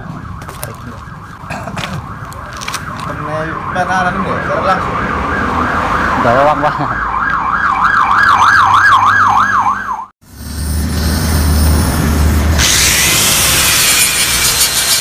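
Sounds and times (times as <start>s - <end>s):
electronic siren wailing: 0.0s - 10.1s
loud harsh hiss: 10.6s - 15.0s.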